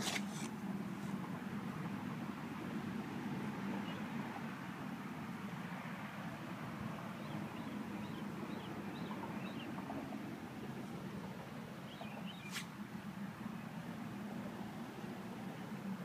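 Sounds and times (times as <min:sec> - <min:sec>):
small pet sneezing: 0:12.5 - 0:12.7.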